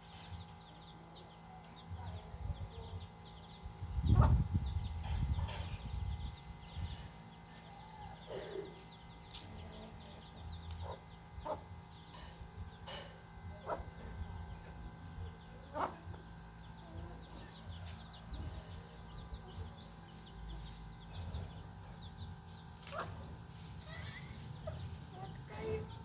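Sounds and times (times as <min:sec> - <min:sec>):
chicks peeping: 0:00.0 - 0:26.0
hen clucking: 0:04.0 - 0:05.8, 0:15.6 - 0:16.2.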